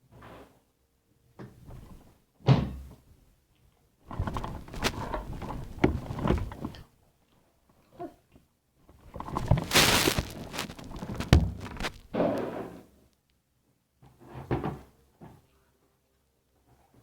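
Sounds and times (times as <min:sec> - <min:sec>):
crackling handling noise: 0:04.1 - 0:06.8, 0:08.9 - 0:12.5.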